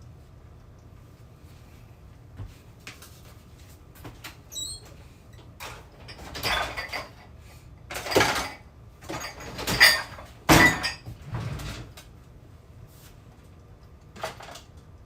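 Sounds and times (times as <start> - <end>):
cupboard doors and drawers closing: 10.5 - 11.9.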